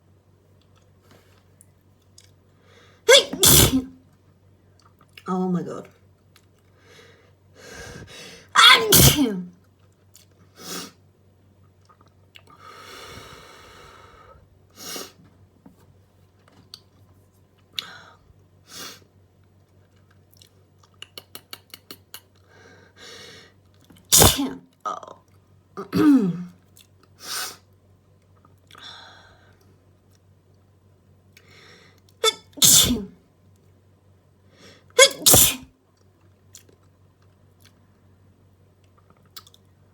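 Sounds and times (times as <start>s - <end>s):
person sneezing: 3.1s - 4.0s, 7.9s - 9.5s, 24.1s - 24.6s, 25.8s - 26.5s, 32.2s - 33.1s, 35.0s - 35.7s.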